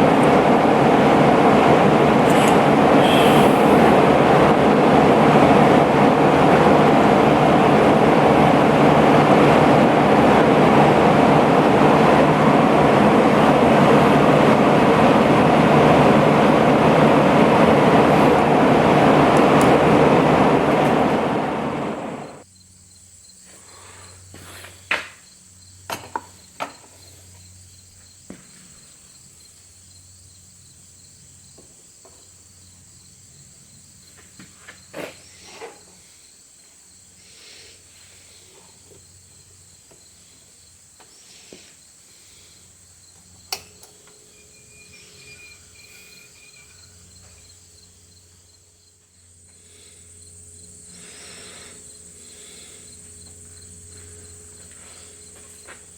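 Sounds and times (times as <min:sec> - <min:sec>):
loud rushing noise: 0:00.0 - 0:22.4
high-pitched chirring: 0:43.8 - 0:48.7.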